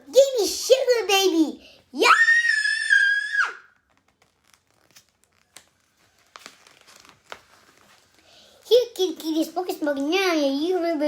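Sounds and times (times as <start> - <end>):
child squealing: 2.0 - 3.8
book page turning: 3.7 - 10.1.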